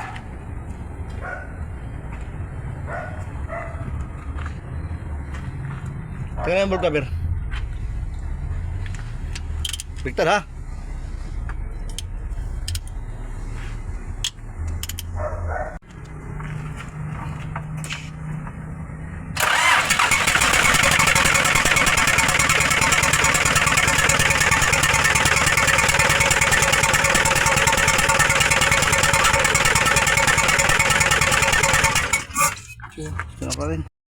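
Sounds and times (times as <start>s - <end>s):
diesel engine idling: 19.3s - 32.6s
engine rapid pulsing backfire: 19.4s - 32.6s.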